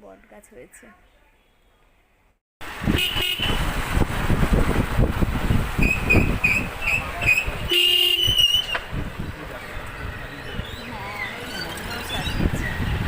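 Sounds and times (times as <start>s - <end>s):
road traffic: 0.0s - 13.0s.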